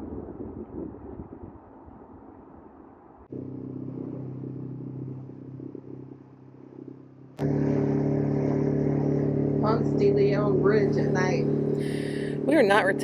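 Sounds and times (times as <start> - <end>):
engine low hum: 3.3 - 13.0
louder engine hum: 3.3 - 13.0.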